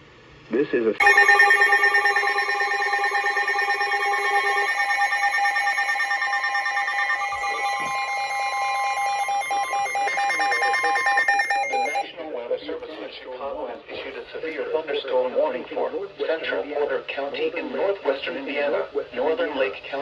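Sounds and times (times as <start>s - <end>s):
emergency alert tone: 1.0s - 12.0s.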